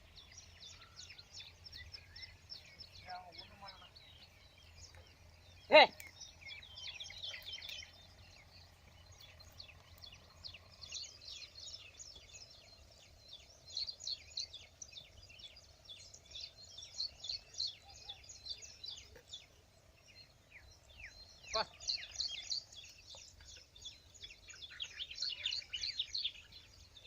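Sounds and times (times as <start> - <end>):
birds chirping: 0.0 - 27.0
man shouting: 5.7 - 5.9.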